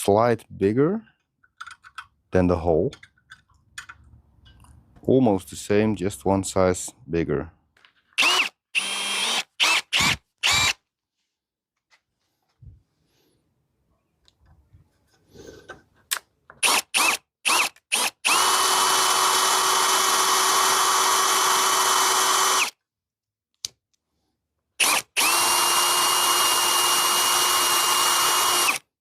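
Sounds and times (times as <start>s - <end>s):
electric drill whining: 8.2s - 10.8s, 16.6s - 22.8s, 24.8s - 28.9s
drill trigger click: 24.8s - 28.8s.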